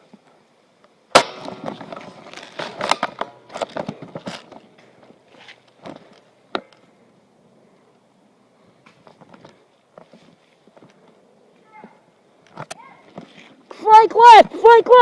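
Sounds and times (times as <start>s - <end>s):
scraping: 1.2s - 6.9s.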